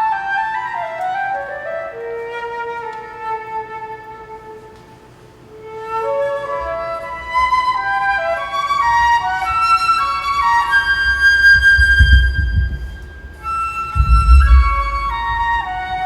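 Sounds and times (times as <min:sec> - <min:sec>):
flute playing a melody: 0:00.0 - 0:16.0
low rumble: 0:11.6 - 0:16.0.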